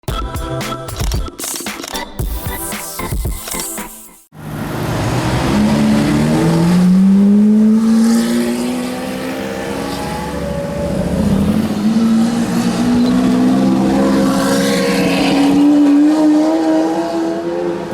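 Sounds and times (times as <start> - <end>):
car engine accelerating: 4.4 - 17.9.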